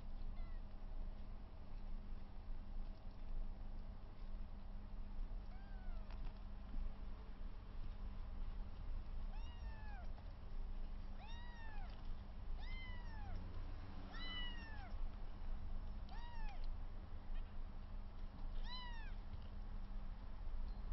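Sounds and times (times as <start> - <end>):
steady low hum: 0.0 - 20.9
kittens mewing: 14.1 - 15.0.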